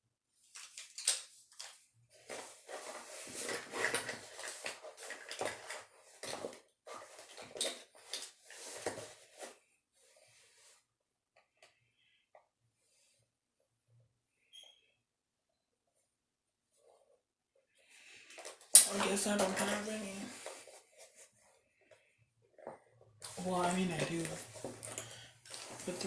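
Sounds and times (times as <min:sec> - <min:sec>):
small objects clattering: 0:00.6 - 0:09.1.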